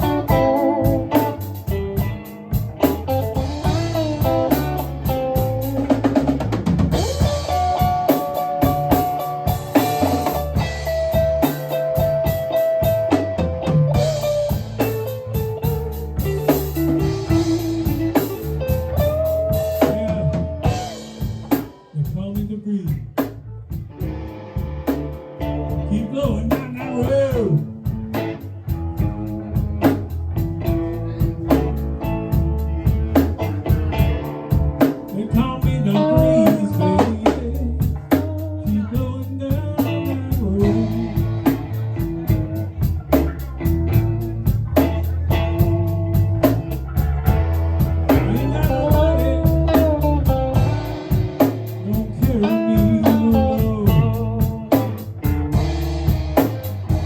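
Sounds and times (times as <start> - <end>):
blues-rock band playing: 0.0 - 57.0
electric guitar lead: 0.0 - 57.0.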